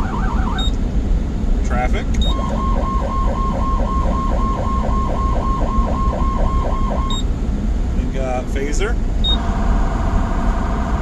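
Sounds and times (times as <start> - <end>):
ambulance electronic siren: 0.0 - 0.8, 2.2 - 7.3
low vehicle rumble: 0.0 - 11.0.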